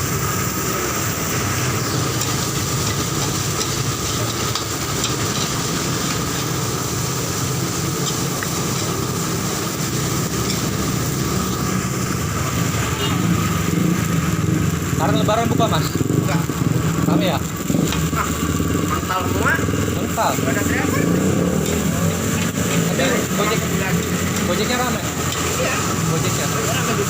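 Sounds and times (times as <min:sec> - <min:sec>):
constant whine: 0:00.0 - 0:27.0
gas burner roaring: 0:00.0 - 0:27.0.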